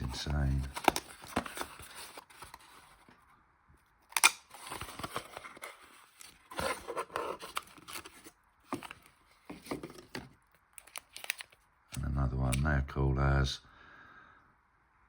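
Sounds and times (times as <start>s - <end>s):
packaging rustling and crinkling: 0.0s - 3.2s, 4.2s - 11.6s.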